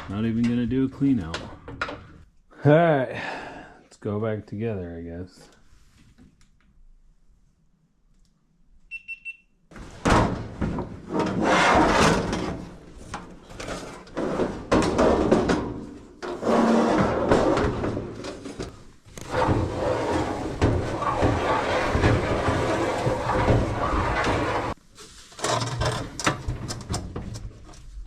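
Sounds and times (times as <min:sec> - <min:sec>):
short electronic beep: 0:08.9 - 0:09.5
metal and plastic parts clattering: 0:17.4 - 0:28.0.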